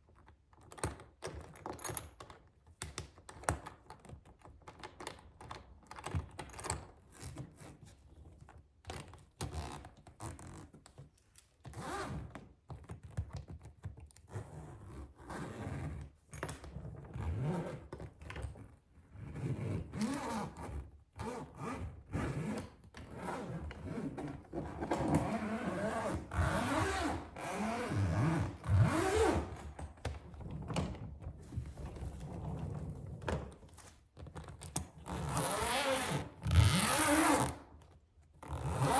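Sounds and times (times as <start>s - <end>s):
suitcase knocks and scrapes: 23.9s - 27.2s.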